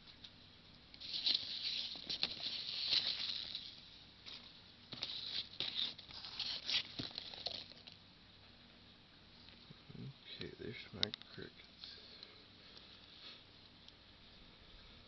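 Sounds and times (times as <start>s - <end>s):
packaging rustling and crinkling: 1.0s - 8.0s.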